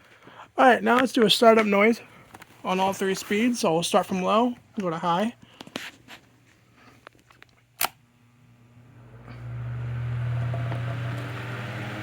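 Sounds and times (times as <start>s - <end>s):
fan motor humming: 7.8s - 12.0s.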